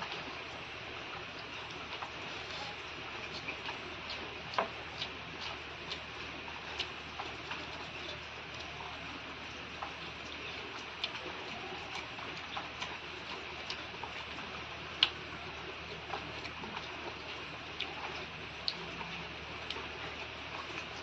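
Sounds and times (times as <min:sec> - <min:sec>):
person chewing: 0:01.6 - 0:08.8, 0:09.8 - 0:15.2, 0:15.8 - 0:20.9
mouth clicks and smacks: 0:14.9 - 0:15.2.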